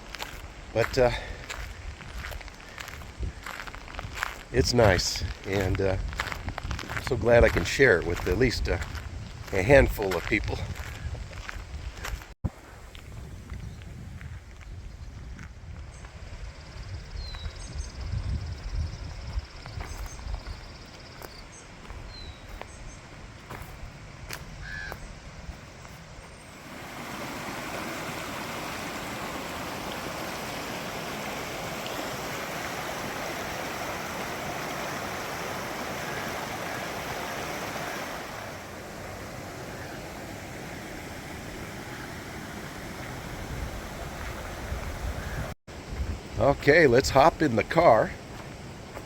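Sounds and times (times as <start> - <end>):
brook water rushing: 0.0 - 8.5, 26.4 - 45.8
short bird calls: 24.6 - 25.1.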